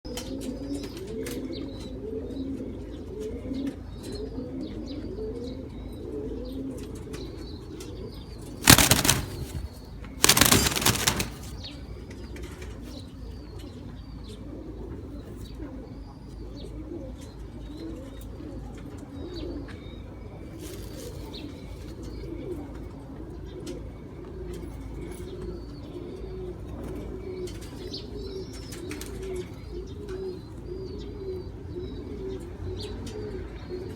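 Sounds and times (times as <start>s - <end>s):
wings flapping: 8.6s - 11.7s.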